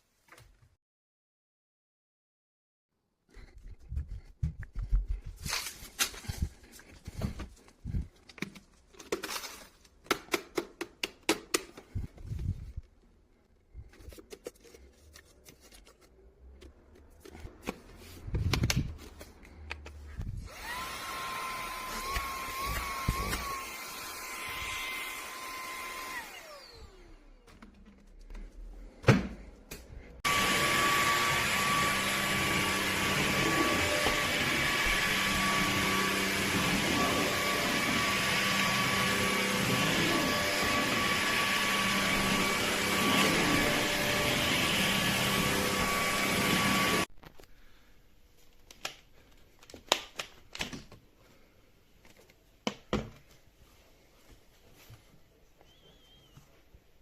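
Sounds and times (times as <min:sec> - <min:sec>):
vacuum cleaner whining: 0:20.4 - 0:27.6, 0:30.2 - 0:47.1.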